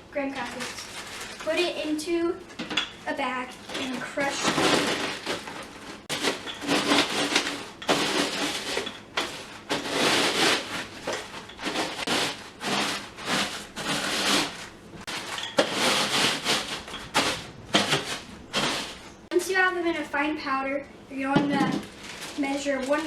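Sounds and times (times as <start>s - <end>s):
crackers crushed in plastic bag: 0.4s - 1.7s, 3.5s - 19.0s, 21.7s - 23.0s.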